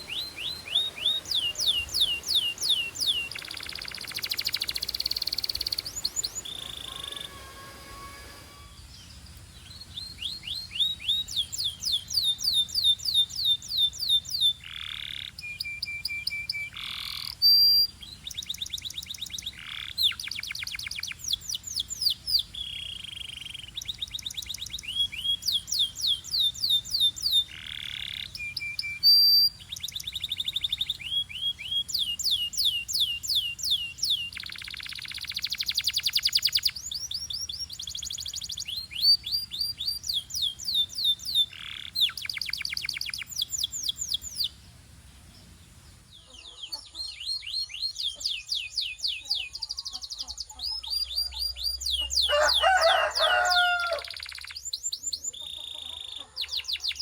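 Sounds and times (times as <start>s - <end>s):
canary singing: 0.0s - 57.0s.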